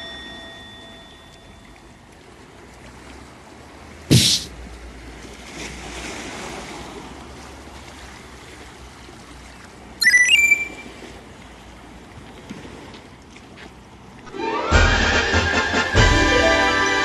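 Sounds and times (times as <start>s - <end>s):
sea waves washing onto shore: 3.5s - 8.9s
high-pitched ringing: 10.0s - 11.0s.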